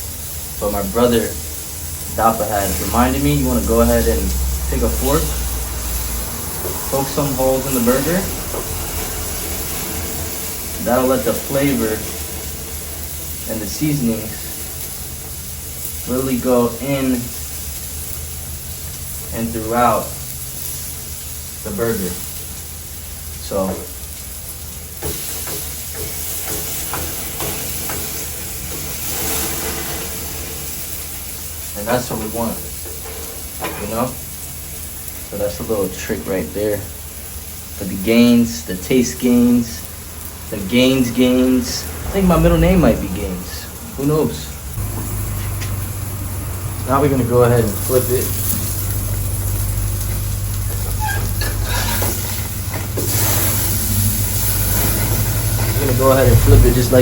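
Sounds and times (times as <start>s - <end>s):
burger patty sizzling in pan: 0.0s - 57.0s
steady low hum: 40.8s - 57.0s.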